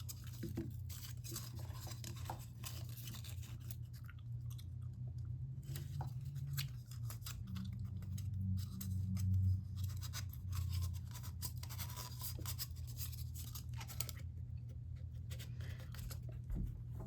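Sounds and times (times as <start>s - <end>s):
hands scratching and rubbing parts: 5.7s - 16.4s.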